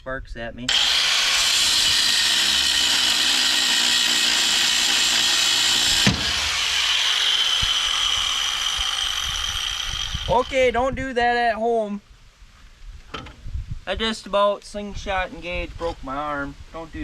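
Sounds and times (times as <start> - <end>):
angle grinder cutting metal: 0.7 - 10.7.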